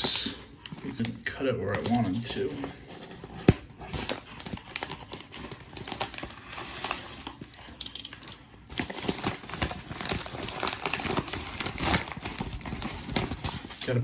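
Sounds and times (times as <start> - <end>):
packaging crinkling and tearing: 0.0 - 14.0.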